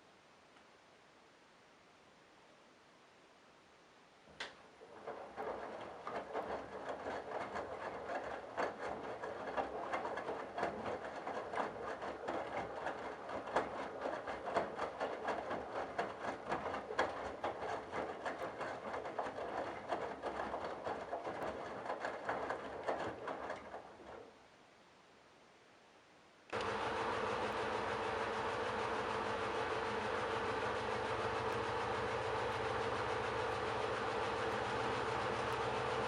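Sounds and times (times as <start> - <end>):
washing machine drum tumbling: 26.6 - 36.0.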